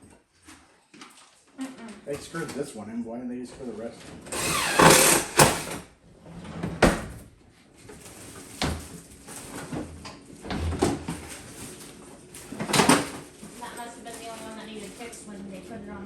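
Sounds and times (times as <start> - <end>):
drawer sliding on runners: 4.3 - 7.0.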